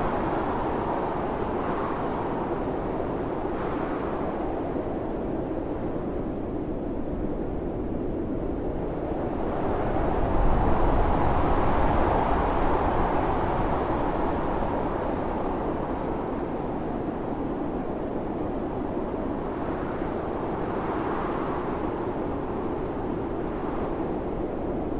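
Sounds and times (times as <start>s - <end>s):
blizzard wind blowing hard: 0.0s - 24.9s.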